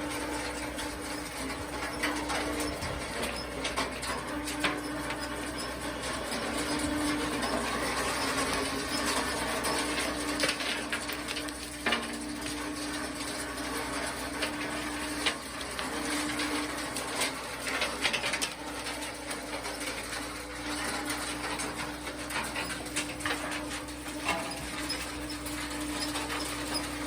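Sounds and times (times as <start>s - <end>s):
machinery humming: 0.0s - 27.0s.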